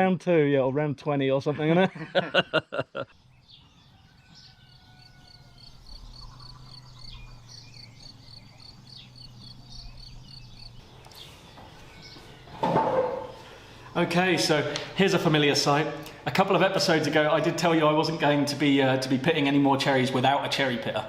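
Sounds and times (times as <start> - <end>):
bird calls: 2.6 - 15.3.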